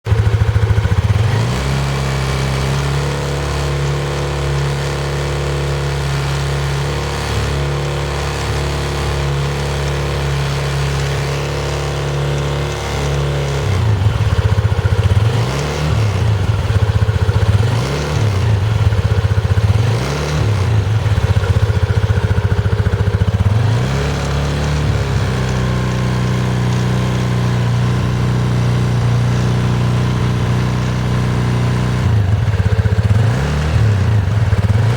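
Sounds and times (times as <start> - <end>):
scooter engine idling: 0.0 - 34.9
scooter throttle blips: 0.0 - 34.9
abnormal rear wheel noise: 0.1 - 34.9.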